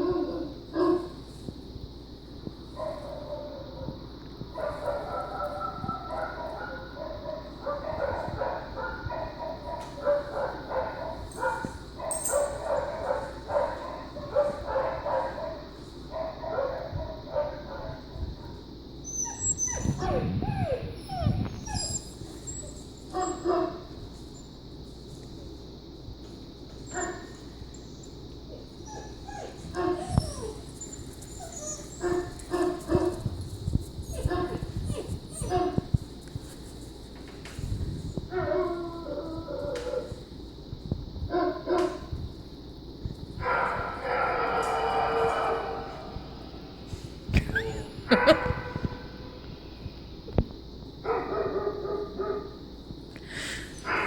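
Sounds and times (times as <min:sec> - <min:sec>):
puppies whimpering and yipping: 0:19.0 - 0:23.0
puppies whining and yipping: 0:19.0 - 0:23.4, 0:28.8 - 0:32.4, 0:34.0 - 0:35.8.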